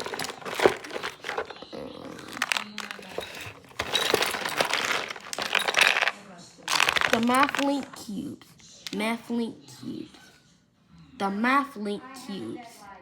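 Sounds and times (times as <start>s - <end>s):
plastic packaging crinkling: 0.0s - 8.0s.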